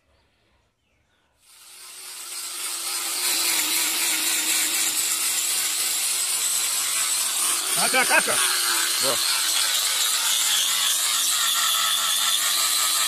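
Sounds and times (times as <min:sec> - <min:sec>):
power tool hissing run: 0:01.4 - 0:13.0.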